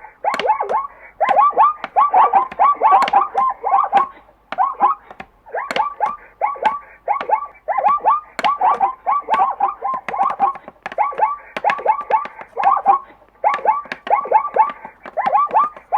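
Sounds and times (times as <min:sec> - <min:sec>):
zebra chirping barks: 0:00.2 - 0:10.4.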